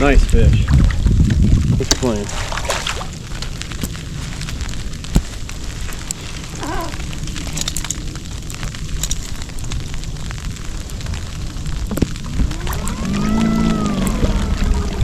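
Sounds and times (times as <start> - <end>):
wind buffeting microphone: 0.0 - 15.0
light ticks: 3.1 - 15.0.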